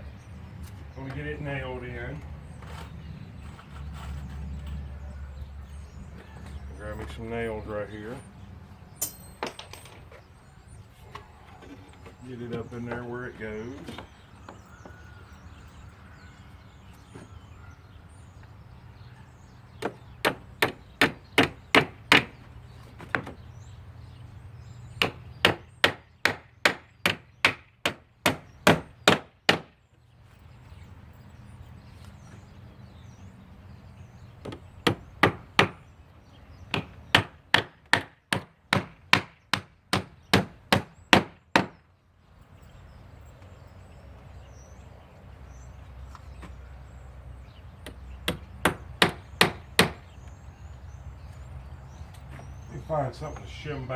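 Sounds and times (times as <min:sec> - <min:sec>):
hammer driving nails into wood: 0:19.8 - 0:22.4, 0:25.0 - 0:29.8, 0:34.4 - 0:35.8, 0:36.7 - 0:41.8, 0:47.9 - 0:50.0.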